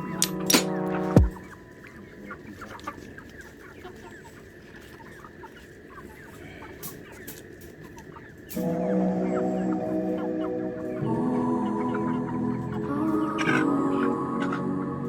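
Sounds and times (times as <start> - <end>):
background music: 0.0 - 1.8, 8.6 - 15.0
chickens clucking and peeping: 0.0 - 15.0.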